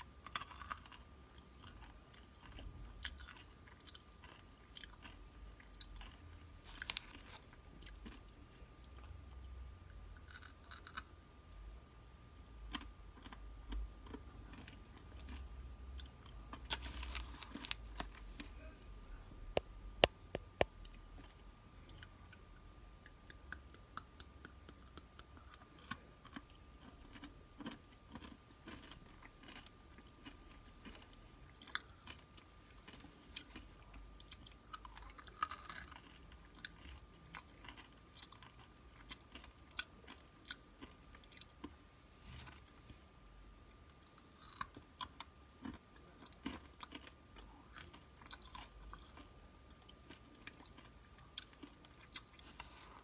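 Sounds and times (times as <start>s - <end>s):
chewing crunchy snacks: 0.0s - 11.6s, 12.6s - 18.7s, 20.0s - 43.0s, 43.7s - 53.0s.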